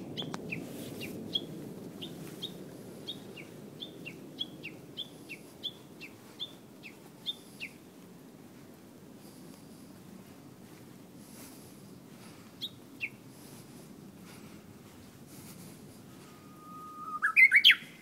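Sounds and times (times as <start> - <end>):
bird calling sharp notes: 16.3 - 18.0.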